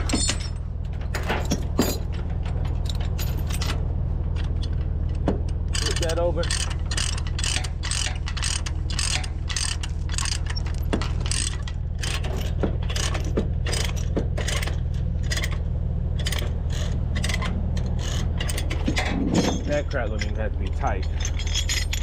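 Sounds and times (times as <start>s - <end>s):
low engine hum: 0.0s - 22.0s
ratchet chain binder clicking: 5.7s - 15.6s, 16.2s - 19.1s.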